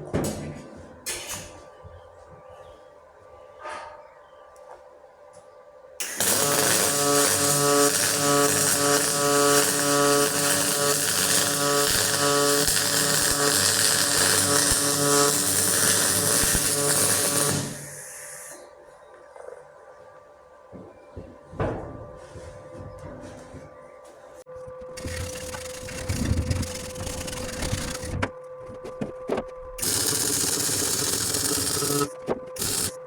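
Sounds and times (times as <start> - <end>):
welder arc crackling hiss: 6.0 - 18.6, 25.0 - 28.2, 29.8 - 33.0
pulsing welder hum: 6.0 - 18.7, 24.9 - 28.3, 29.7 - 33.0.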